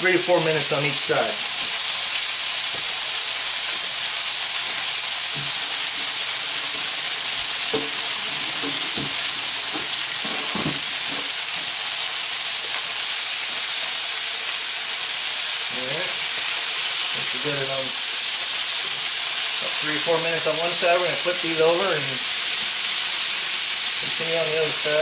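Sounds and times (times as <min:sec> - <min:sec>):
meat sizzling in frying pan: 0:00.0 - 0:25.0.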